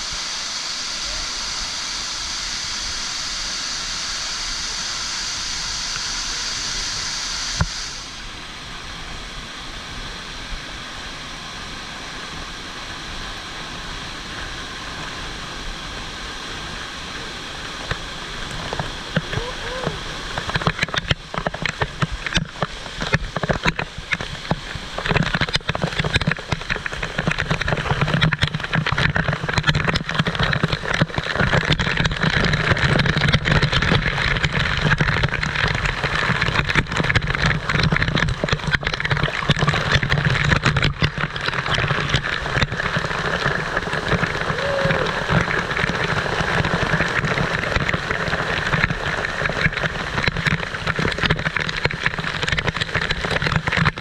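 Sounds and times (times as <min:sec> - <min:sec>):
waterfall rushing: 0:10.3 - 0:23.0, 0:41.2 - 0:51.2.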